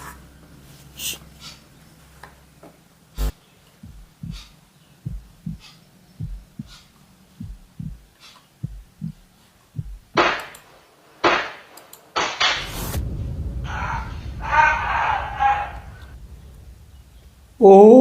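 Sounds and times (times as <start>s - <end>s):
heartbeat thumps: 3.8s - 10.2s
loud bursts of harsh noise: 12.6s - 18.0s.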